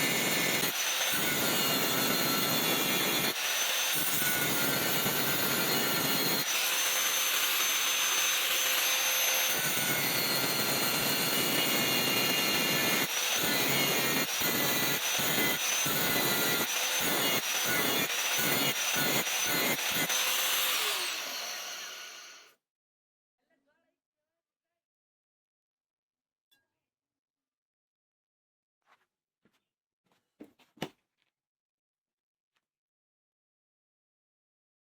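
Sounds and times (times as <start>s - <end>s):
electric grinder grinding steel: 0.0s - 22.5s.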